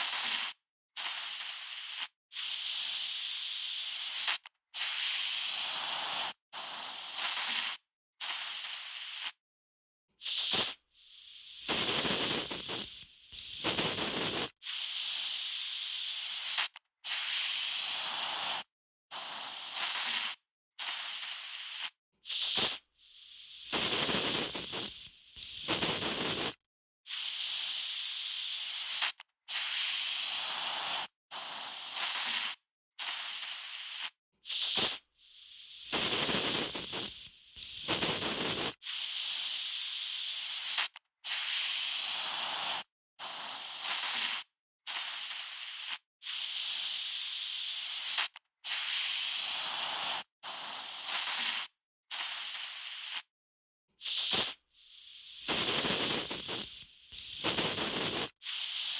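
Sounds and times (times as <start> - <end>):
aerosol spray hissing: 10.2 - 15.2, 16.3 - 26.6, 28.4 - 39.5, 40.4 - 46.9, 47.7 - 53.2, 54.0 - 58.9.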